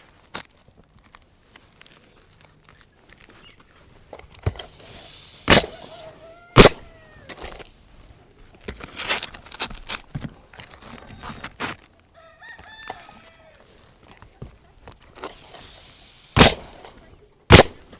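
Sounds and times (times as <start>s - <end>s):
brief hiss: 4.4s - 6.8s, 15.3s - 16.9s
loud sharp bangs: 4.7s - 6.8s, 15.4s - 16.8s, 17.5s - 17.8s.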